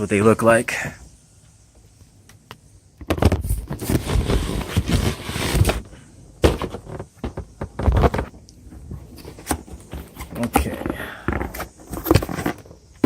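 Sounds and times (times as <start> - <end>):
cardboard rustling and scraping: 3.1 - 13.0.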